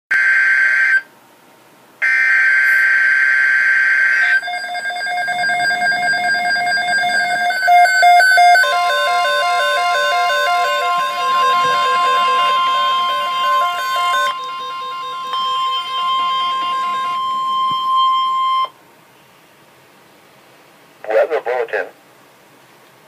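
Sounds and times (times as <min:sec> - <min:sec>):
steady single-pitched alert tone: 0:04.2 - 0:18.7.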